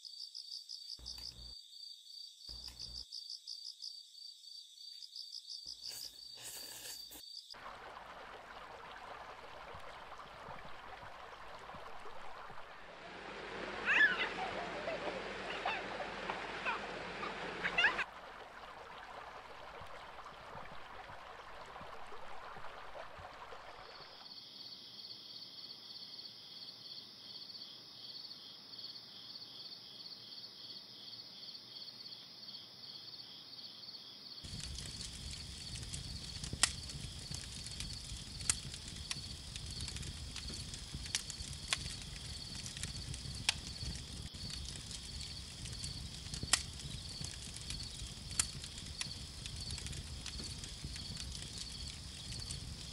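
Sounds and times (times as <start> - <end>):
insects trilling: 0.0 - 7.6, 34.2 - 52.9
creek water rushing: 7.6 - 24.2.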